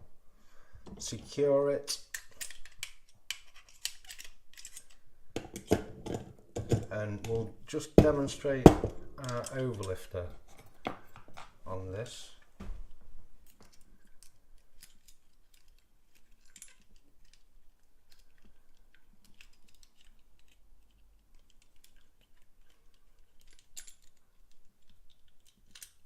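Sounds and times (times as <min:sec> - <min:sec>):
metallic clicks of lock picking: 0:02.0 - 0:06.2, 0:09.2 - 0:10.2, 0:13.6 - 0:26.0.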